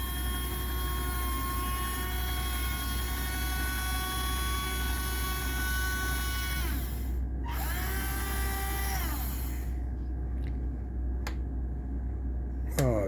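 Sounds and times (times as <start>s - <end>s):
small electric motor whining: 0.0s - 9.8s
steady low hum: 0.0s - 13.0s.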